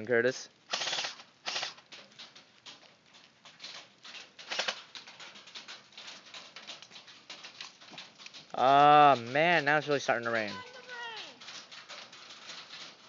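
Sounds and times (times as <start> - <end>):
raindrops pattering: 0.0 - 13.0
rustling bursts: 0.5 - 13.0.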